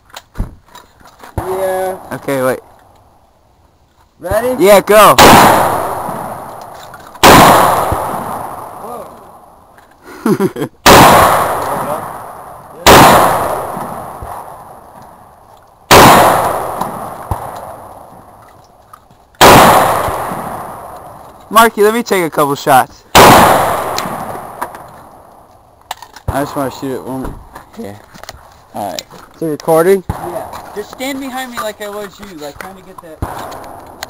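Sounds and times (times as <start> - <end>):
echoing gunshots: 4.4 - 9.5, 10.8 - 15.3, 15.9 - 18.3, 19.4 - 21.2, 23.1 - 25.5, 30.0 - 30.8, 33.2 - 34.0.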